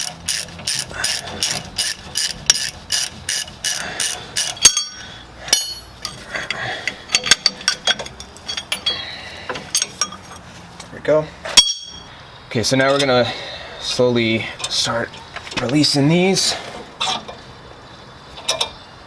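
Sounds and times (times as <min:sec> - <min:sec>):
ratchet wrench clicking: 0:00.0 - 0:05.0
metallic clink: 0:00.0 - 0:06.2, 0:07.1 - 0:09.1, 0:11.6 - 0:12.1.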